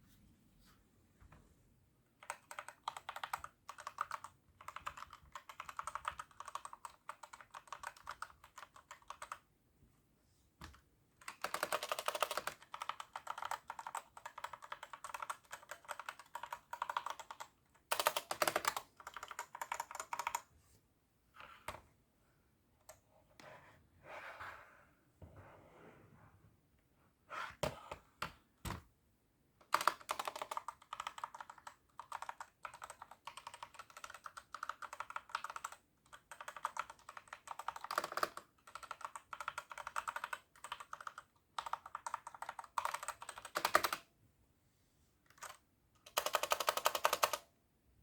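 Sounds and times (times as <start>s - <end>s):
mechanical keyboard typing: 2.2s - 9.4s, 10.7s - 20.5s, 29.6s - 44.1s, 45.3s - 47.5s.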